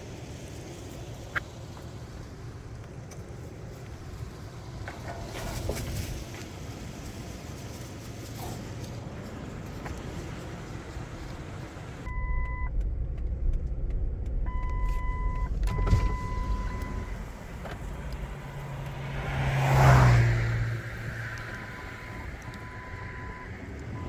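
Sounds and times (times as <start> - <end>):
low engine-like rumble: 0.0 - 24.0
electronic beep tone: 12.1 - 12.7, 14.5 - 17.2
car passing by: 15.6 - 24.0.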